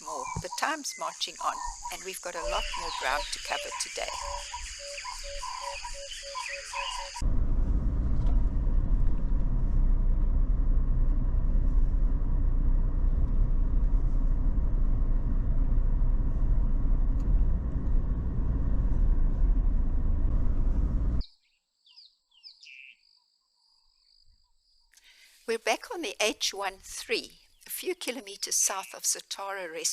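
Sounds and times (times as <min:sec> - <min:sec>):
car and road noise rumble: 0:06.8 - 0:21.2.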